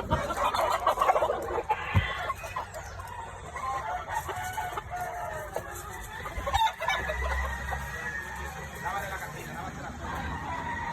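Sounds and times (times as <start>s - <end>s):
chickens clucking: 0.0s - 10.9s
rooster crowing: 3.2s - 9.4s, 10.0s - 10.9s.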